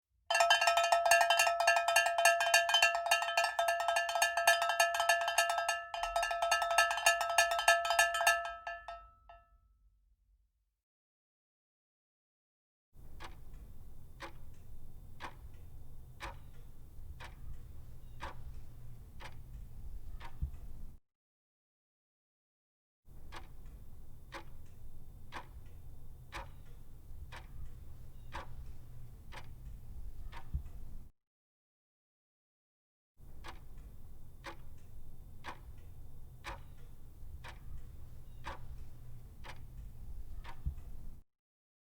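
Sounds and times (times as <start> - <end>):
clock ticking: 0.3 - 9.0, 13.1 - 21.0, 23.2 - 31.1, 33.3 - 41.2
small metal bell struck rapidly: 0.3 - 9.3
low steady rumble: 13.5 - 21.0, 23.6 - 31.1, 33.8 - 41.2.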